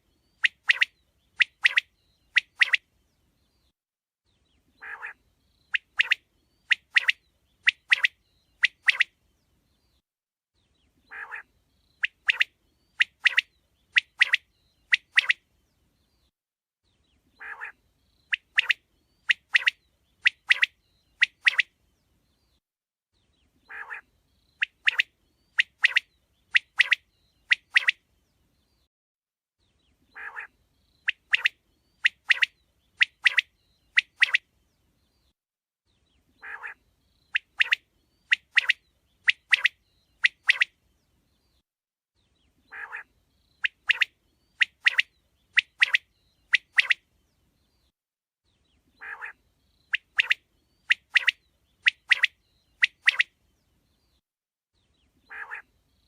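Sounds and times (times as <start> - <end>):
quail calling: 4.8 - 9.1, 11.1 - 13.4, 17.4 - 18.7, 23.7 - 24.0, 30.1 - 30.5, 36.4 - 36.8, 42.7 - 46.0, 49.0 - 53.3, 55.3 - 55.7.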